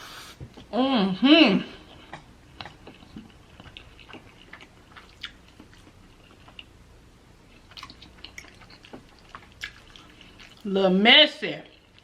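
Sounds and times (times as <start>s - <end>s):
person chewing: 1.8s - 6.8s, 7.5s - 10.7s.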